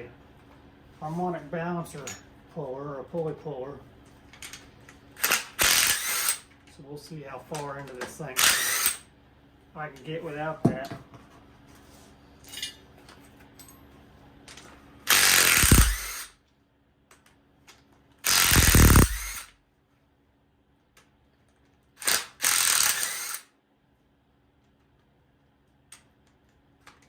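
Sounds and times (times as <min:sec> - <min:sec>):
impact wrench bursts: 0:05.2 - 0:06.5, 0:08.4 - 0:09.0, 0:15.1 - 0:16.4, 0:18.2 - 0:19.5, 0:22.0 - 0:23.5.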